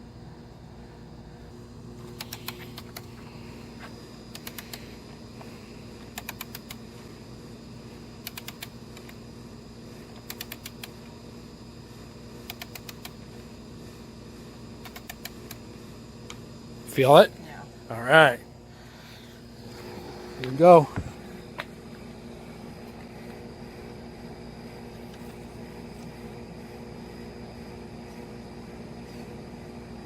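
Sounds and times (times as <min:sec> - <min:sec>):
torque wrench ratcheting clicks: 0:02.2 - 0:03.1, 0:04.3 - 0:04.8, 0:06.1 - 0:06.8, 0:08.2 - 0:09.1, 0:10.2 - 0:10.9, 0:12.5 - 0:13.2.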